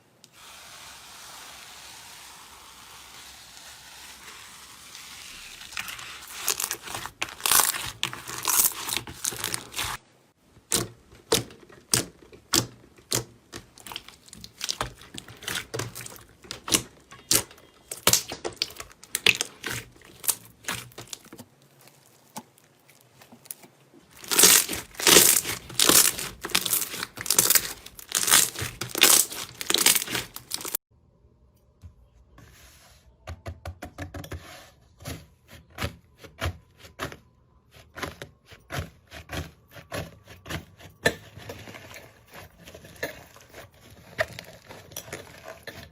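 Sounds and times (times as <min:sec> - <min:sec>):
slime crackling and popping: 0:04.9 - 0:10.0, 0:10.7 - 0:30.8.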